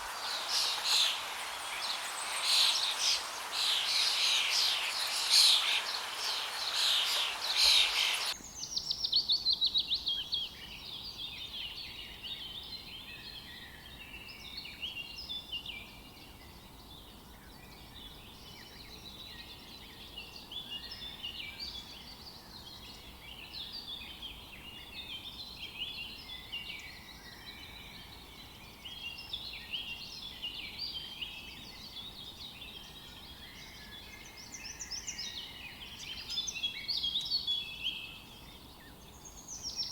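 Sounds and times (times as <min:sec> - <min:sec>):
sparrows chirping: 0:00.0 - 0:09.2.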